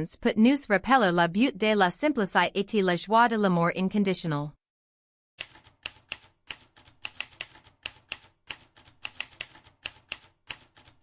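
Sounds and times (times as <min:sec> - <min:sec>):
keystroke clicks: 0:05.4 - 0:11.0.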